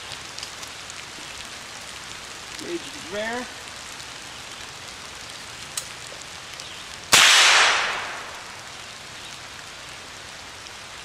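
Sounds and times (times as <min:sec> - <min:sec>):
rifle shot: 0:07.1 - 0:08.5.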